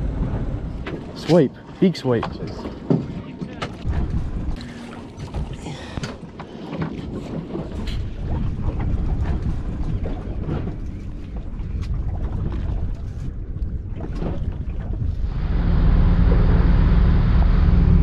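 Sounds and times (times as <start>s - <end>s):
water noise: 0.0s - 18.0s
wind on microphone: 3.8s - 5.8s, 6.8s - 18.0s.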